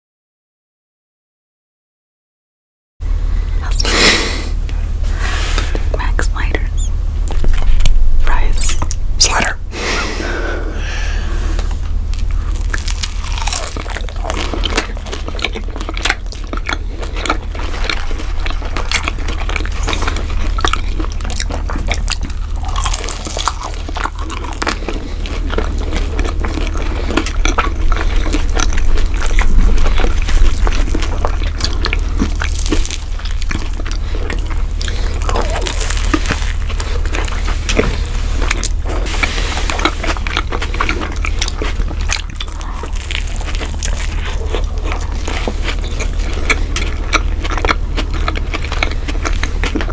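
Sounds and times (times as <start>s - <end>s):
birds crunching food: 3.5s - 49.9s.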